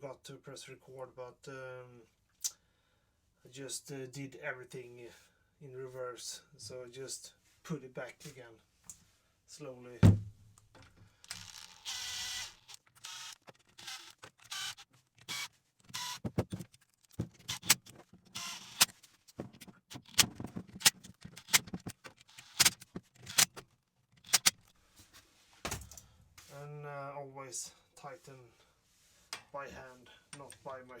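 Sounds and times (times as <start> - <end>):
metallic clicks of hand tools: 24.2 - 24.6.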